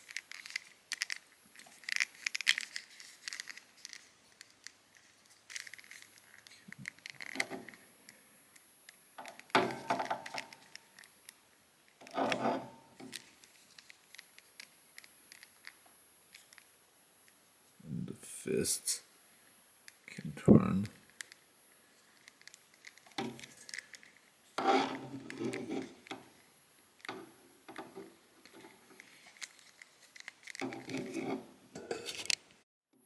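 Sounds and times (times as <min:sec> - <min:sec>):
plastic figure clicks and scrapes: 0:00.0 - 0:07.8, 0:22.2 - 0:26.4, 0:27.0 - 0:32.5.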